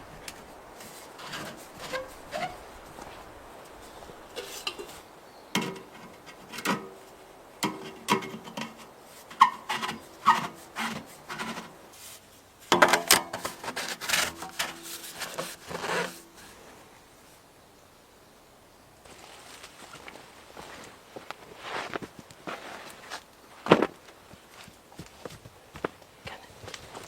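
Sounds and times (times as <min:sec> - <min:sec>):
wood scraped by hand: 0:00.2 - 0:03.3, 0:07.6 - 0:12.2, 0:13.3 - 0:16.6.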